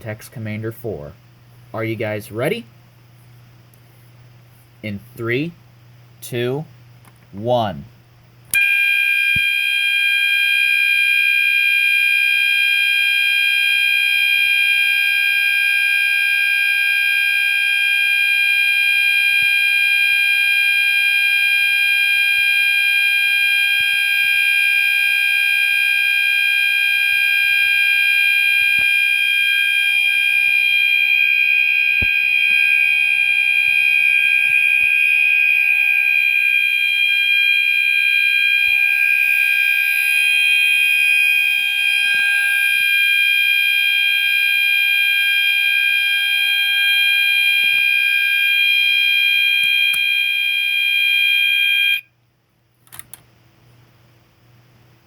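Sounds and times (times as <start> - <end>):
loud steady fire alarm tone: 8.5 - 52.1.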